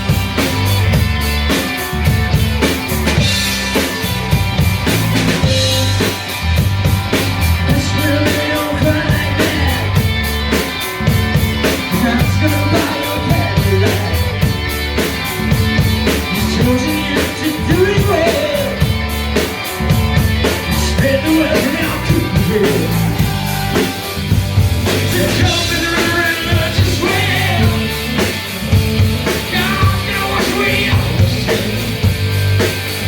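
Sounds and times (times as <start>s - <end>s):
drum kit beat: 0.0s - 33.0s
heavy bass: 0.0s - 33.0s
person singing: 7.6s - 10.0s, 11.8s - 14.4s, 16.2s - 18.9s, 20.7s - 23.5s, 24.9s - 28.1s, 29.4s - 31.9s.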